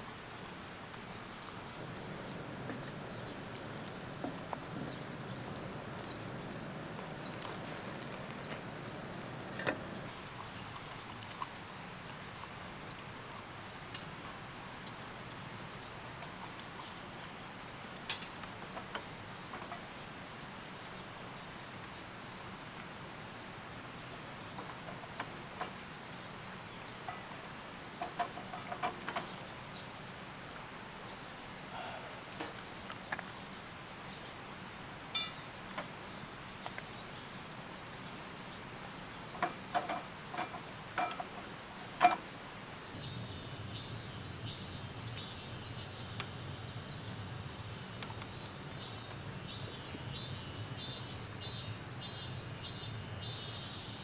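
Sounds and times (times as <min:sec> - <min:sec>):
insects trilling: 0:00.0 - 0:54.0
small clicks and knocks: 0:39.4 - 0:42.2.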